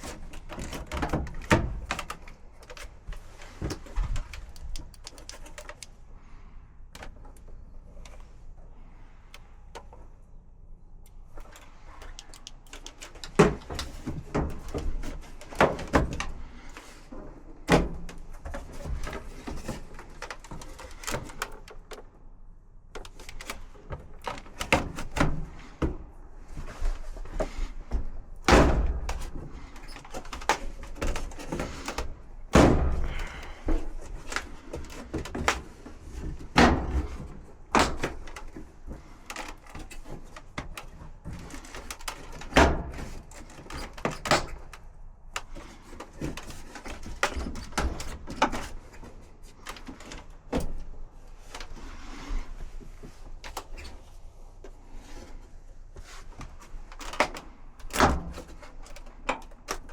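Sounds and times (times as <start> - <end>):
metal panels knocking and clanking: 0.0 - 5.9, 11.2 - 22.2, 23.0 - 51.7.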